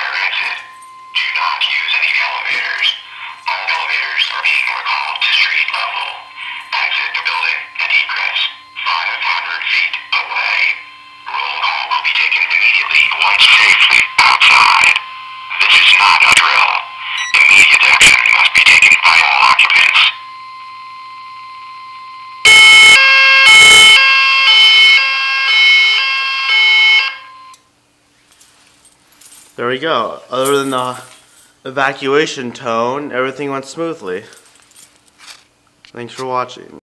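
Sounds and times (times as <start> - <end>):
recorded voice message over speaker: 0.0 - 20.2, 29.6 - 34.4, 35.9 - 36.8
faint steady beep tone: 0.0 - 23.0
harsh multi-pitch alarm tone: 0.0 - 27.7.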